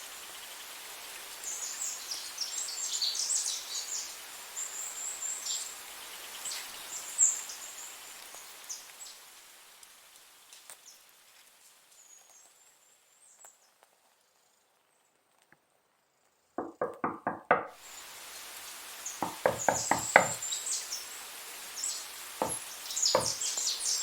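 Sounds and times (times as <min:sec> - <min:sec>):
faint high chirping: 0:19.1 - 0:21.1, 0:21.8 - 0:24.0
quick knocks: 0:19.2 - 0:20.4, 0:23.2 - 0:23.4.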